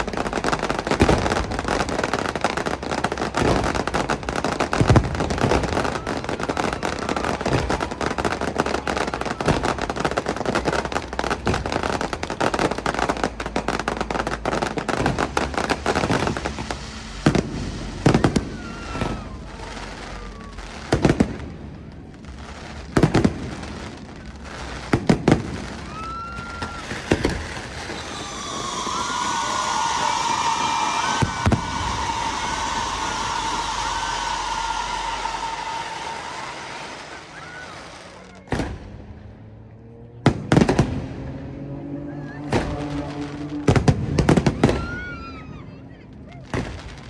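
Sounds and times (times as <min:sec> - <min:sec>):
fireworks whistling: 0:00.0 - 0:38.8, 0:42.2 - 0:45.7
fireworks bursting: 0:00.0 - 0:39.2, 0:40.2 - 0:41.1, 0:42.3 - 0:45.6
steady hiss: 0:13.4 - 0:20.2, 0:26.7 - 0:37.6.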